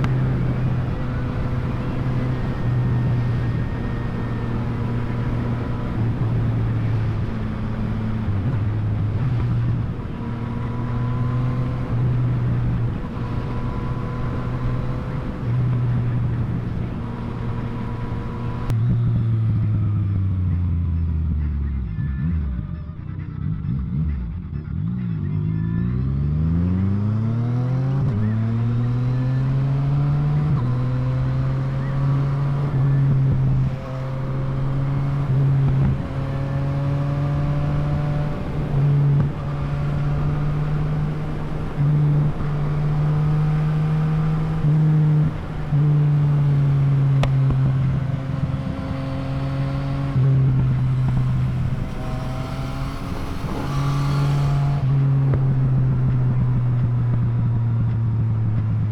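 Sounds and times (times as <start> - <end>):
motorcycle engine accelerating: 0.0 - 58.9
wind rushing: 49.7 - 55.0.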